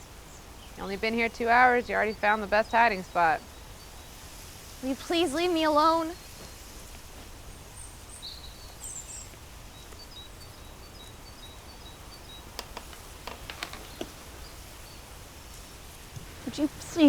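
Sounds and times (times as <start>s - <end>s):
low background noise: 0.0s - 17.0s
small birds chirping: 0.0s - 17.0s
light clicks: 12.5s - 14.4s.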